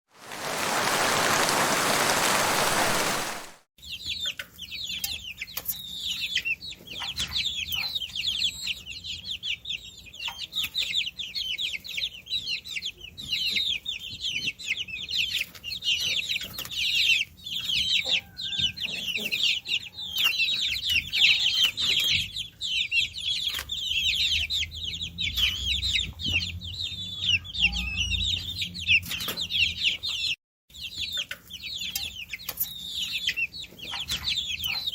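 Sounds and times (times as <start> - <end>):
loud even hiss: 0.2 - 3.6
chicks cheeping: 0.2 - 34.9.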